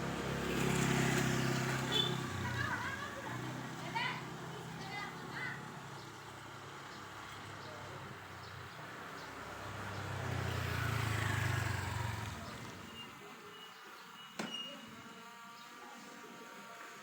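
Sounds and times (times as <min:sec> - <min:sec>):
vehicle engine passing: 0:00.0 - 0:13.1.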